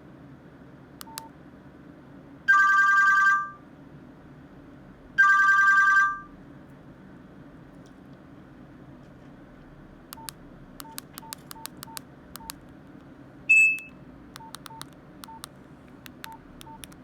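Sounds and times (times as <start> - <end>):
phone key click and beep: 1.0 - 1.3, 10.2 - 12.6, 13.5 - 15.5, 16.1 - 17.0
warbling phone ring tone: 2.5 - 3.6, 5.2 - 6.3.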